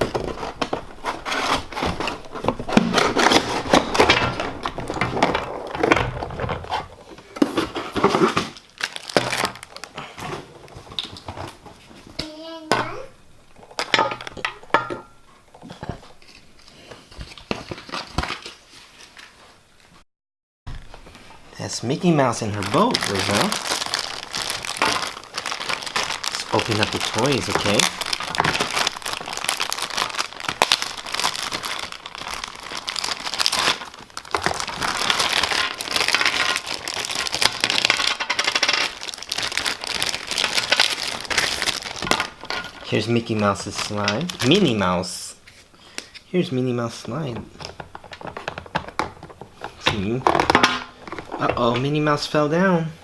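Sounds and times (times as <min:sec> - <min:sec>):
packaging crinkling: 0:00.0 - 0:12.0, 0:15.6 - 0:19.4, 0:21.8 - 0:44.9, 0:47.5 - 0:52.2
plastic toys knocking and clicking: 0:22.8 - 0:32.7, 0:33.5 - 0:42.9, 0:47.1 - 0:51.9.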